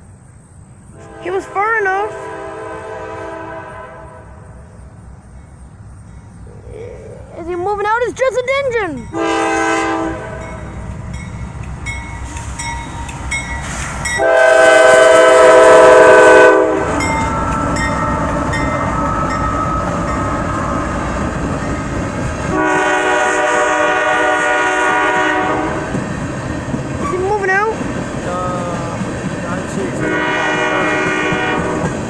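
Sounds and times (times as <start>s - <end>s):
locomotive engine rumble: 0.0s - 32.0s
locomotive air horn blasts: 0.9s - 4.4s, 9.1s - 10.6s, 14.2s - 17.2s, 22.5s - 25.9s, 30.0s - 31.9s
crossing bell dinging: 7.5s - 14.5s, 16.6s - 22.0s.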